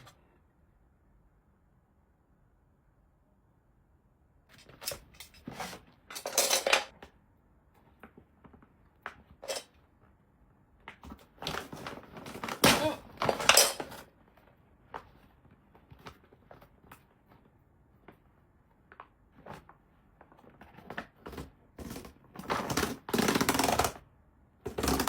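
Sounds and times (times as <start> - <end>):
objects clattering and rustling: 4.5 - 7.0, 7.8 - 9.8, 11.0 - 17.5.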